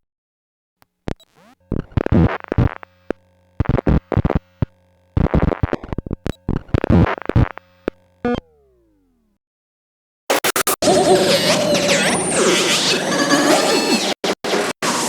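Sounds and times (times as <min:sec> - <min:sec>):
sharp clicks: 0:00.8 - 0:08.5
stuttering digital glitch bursts: 0:01.1 - 0:08.4, 0:10.3 - 0:15.0
steady electronic hum: 0:01.1 - 0:09.4.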